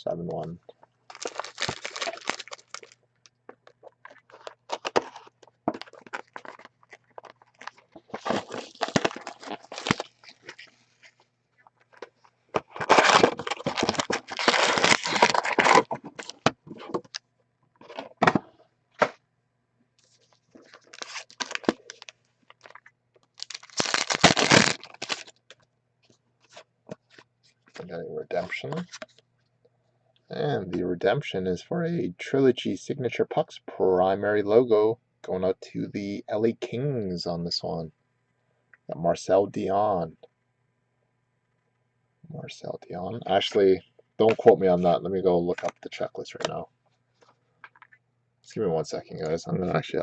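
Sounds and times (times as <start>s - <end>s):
plastic packaging crinkling: 1.1s - 17.2s, 20.0s - 25.6s.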